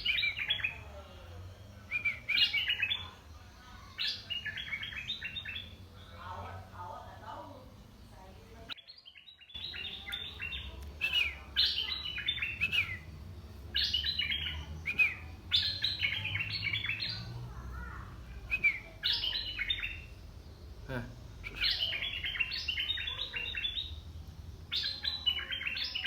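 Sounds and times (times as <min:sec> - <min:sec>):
bulbul chirping song: 0:00.0 - 0:06.7, 0:07.3 - 0:26.0.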